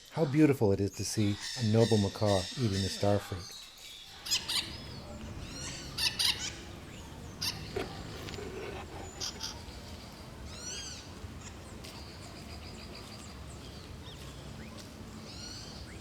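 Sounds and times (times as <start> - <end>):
birds squawking: 4.1 - 11.2
high bird chirps: 4.2 - 9.5.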